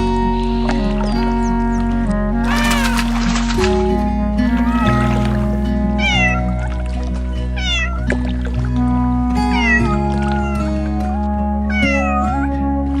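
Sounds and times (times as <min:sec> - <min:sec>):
cat meowing: 0:02.4 - 0:03.4, 0:04.6 - 0:06.5, 0:07.6 - 0:08.1, 0:11.7 - 0:12.4.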